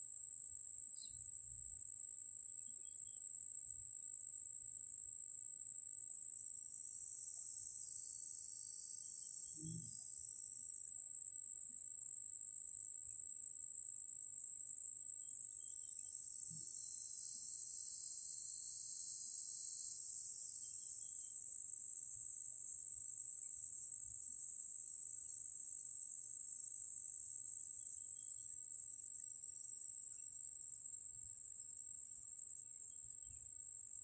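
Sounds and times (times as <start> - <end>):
high-pitched insect chorus trilling: 0.0 - 34.0
lower insect trill: 0.0 - 34.0.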